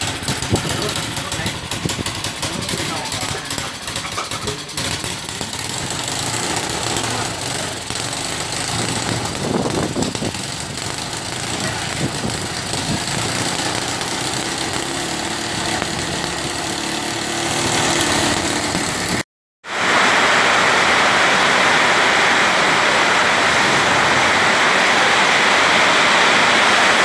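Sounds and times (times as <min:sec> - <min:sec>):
boat engine running: 0:00.0 - 0:19.2
loud even hiss: 0:00.0 - 0:27.0.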